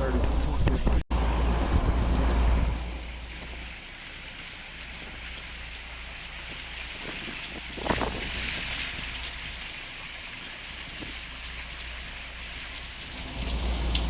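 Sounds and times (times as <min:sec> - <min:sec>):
boat engine hum: 0:00.0 - 0:14.0
water rushing past hull: 0:00.0 - 0:14.0
wind buffeting microphone: 0:04.7 - 0:09.8.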